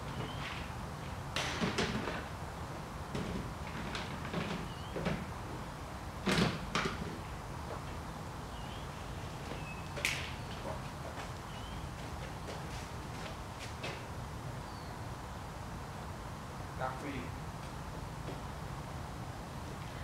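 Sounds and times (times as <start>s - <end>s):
sharp knocks and clatters: 1.4s - 2.3s.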